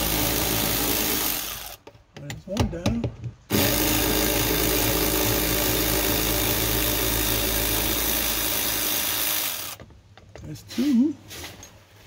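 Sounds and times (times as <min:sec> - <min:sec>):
power ratchet running: 0:00.0 - 0:01.8, 0:03.5 - 0:09.8.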